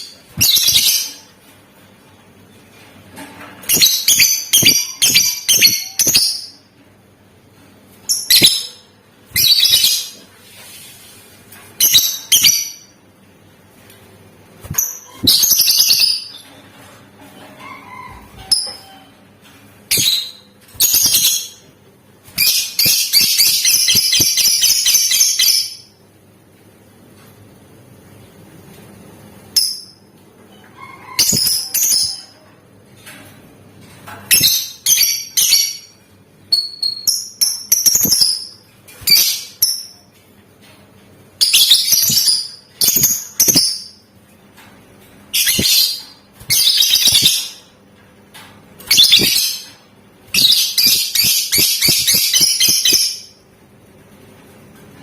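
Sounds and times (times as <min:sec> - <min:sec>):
lovebird shrill rapid chatter: 0:45.4 - 0:47.5, 0:50.4 - 0:53.2.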